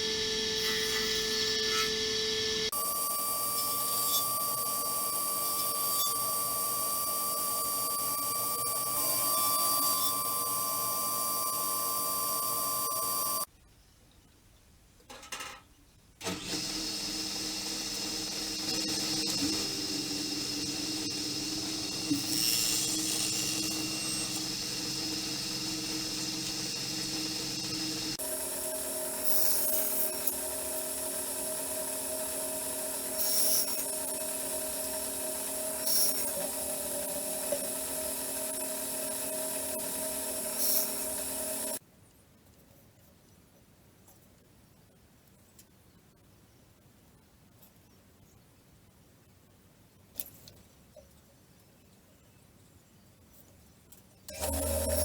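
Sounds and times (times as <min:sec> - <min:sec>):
woodworking power tool whine: 0:00.0 - 0:13.5, 0:16.2 - 0:41.8, 0:54.3 - 0:55.0
tool hissing into wood: 0:18.4 - 0:28.4, 0:34.9 - 0:41.8.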